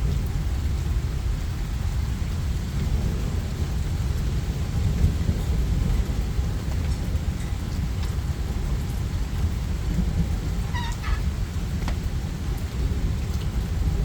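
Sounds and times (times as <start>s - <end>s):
low thunder rumble: 0.0s - 14.0s
steady rain: 0.0s - 14.0s
high animal call: 10.7s - 11.3s.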